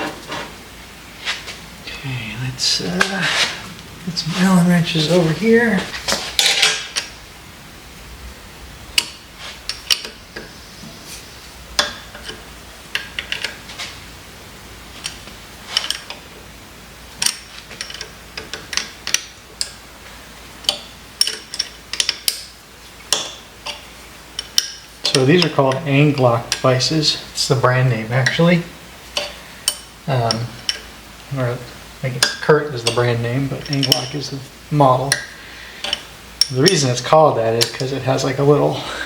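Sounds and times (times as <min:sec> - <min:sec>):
metal wrenches clinking on steel: 0:17.2 - 0:19.8, 0:20.7 - 0:22.5, 0:23.1 - 0:26.7, 0:29.2 - 0:30.9, 0:32.2 - 0:34.3.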